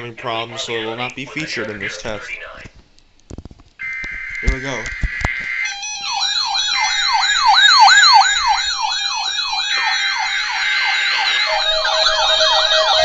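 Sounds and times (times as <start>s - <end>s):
wailing siren alarm: 3.8s - 13.0s
quick warbling alarm: 5.6s - 13.0s.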